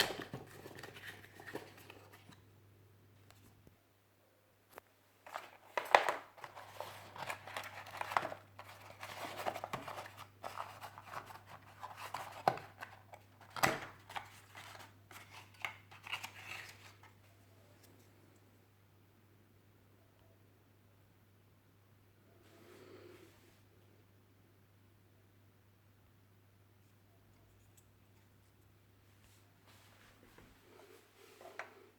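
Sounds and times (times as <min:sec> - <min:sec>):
packaging rustling and crinkling: 0:00.0 - 0:02.4, 0:05.2 - 0:17.2.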